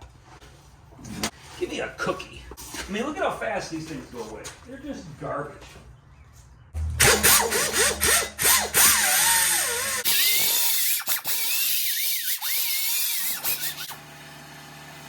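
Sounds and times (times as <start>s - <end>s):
die grinder grinding metal: 6.8s - 14.0s.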